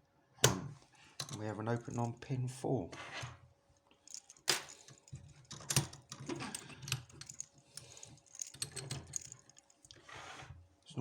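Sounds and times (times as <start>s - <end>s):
small metal clicks and clacks: 4.1s - 10.0s.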